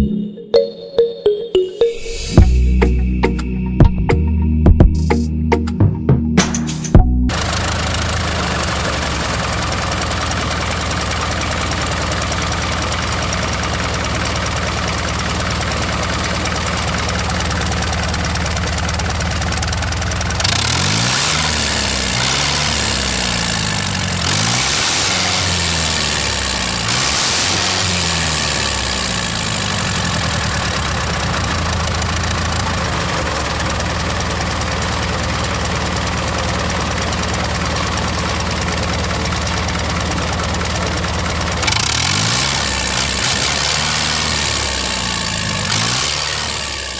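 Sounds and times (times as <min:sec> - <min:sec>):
small engine running: 0:07.3 - 0:46.9.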